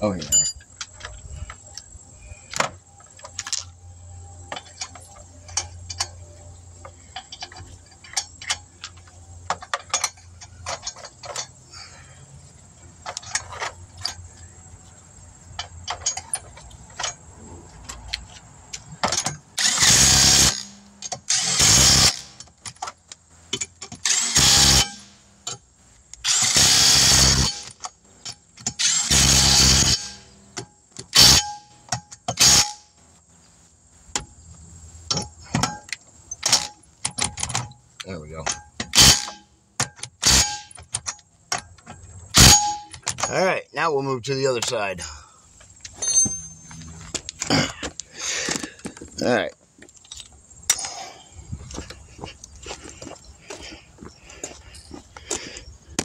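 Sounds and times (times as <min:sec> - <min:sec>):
metallic clicks of lug nuts: 0:04.5 - 0:06.2, 0:06.9 - 0:11.6, 0:13.0 - 0:14.4, 0:15.5 - 0:24.2, 0:35.1 - 0:43.3, 0:49.8 - 0:51.1
impact wrench bursts: 0:19.0 - 0:22.5, 0:23.8 - 0:25.6, 0:26.2 - 0:27.8, 0:28.6 - 0:30.4, 0:31.0 - 0:33.0, 0:38.7 - 0:41.1, 0:42.3 - 0:43.2.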